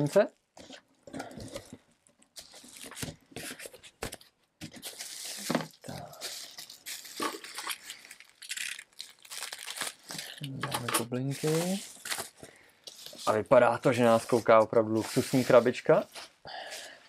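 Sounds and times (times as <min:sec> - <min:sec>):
bubble wrap crinkling: 0:01.6 - 0:10.6, 0:11.2 - 0:16.2.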